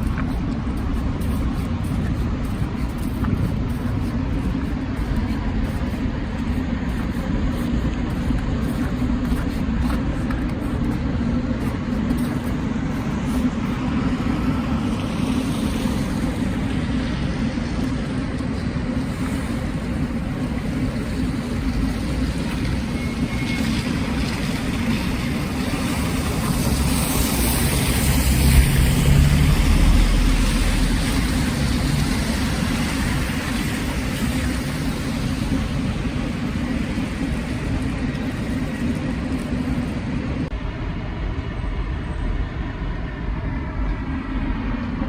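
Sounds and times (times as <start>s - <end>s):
city street traffic hum: 0.0s - 45.0s
vehicle passing close by: 26.7s - 32.5s.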